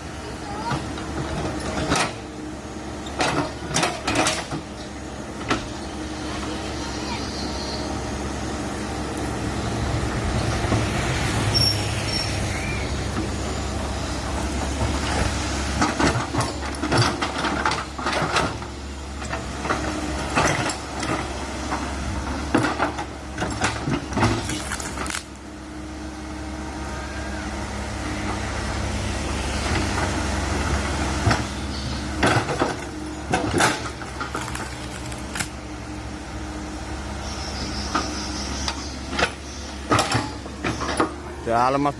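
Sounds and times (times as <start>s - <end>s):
excavator engine running: 0.0s - 41.9s.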